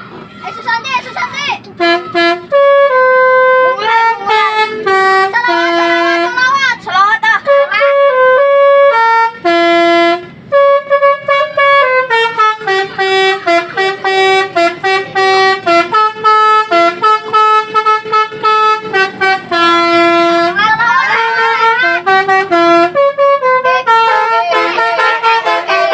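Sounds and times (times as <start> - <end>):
musical horn playing a melody: 1.8 - 6.4, 7.5 - 25.9.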